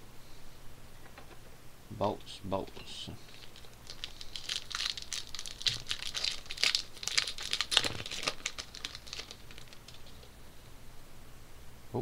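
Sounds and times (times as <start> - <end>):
plastic wrapper crinkling: 3.3 - 10.4.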